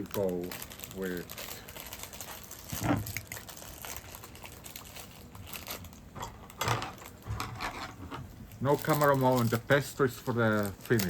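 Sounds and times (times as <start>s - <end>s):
wet food noises: 0.0s - 6.2s.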